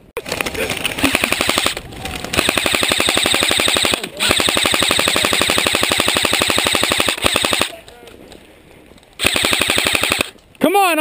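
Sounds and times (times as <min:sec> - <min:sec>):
airsoft rifle automatic fire: 0:01.0 - 0:07.8, 0:09.2 - 0:10.4.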